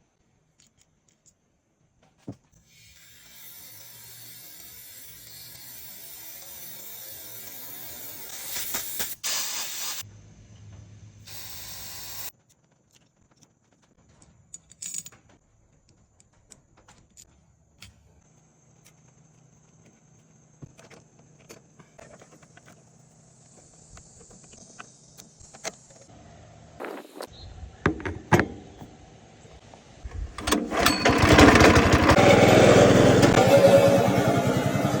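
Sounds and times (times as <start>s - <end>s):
small metal parts clicking: 0.5s - 1.5s, 12.4s - 18.2s
spray hissing: 6.4s - 10.0s, 11.3s - 12.3s.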